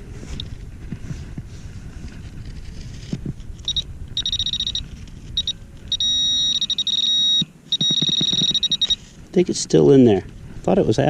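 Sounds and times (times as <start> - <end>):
digging in dirt: 0.0 - 10.7
metal detector beeping: 3.6 - 9.1.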